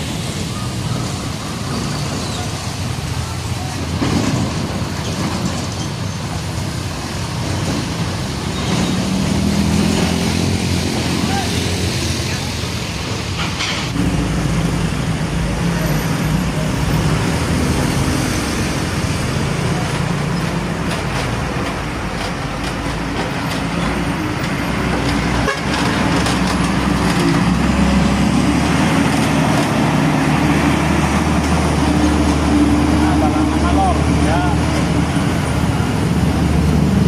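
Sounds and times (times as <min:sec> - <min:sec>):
diesel trucks passing: 0:00.0 - 0:37.0
vehicle horn tooting: 0:25.4 - 0:25.8.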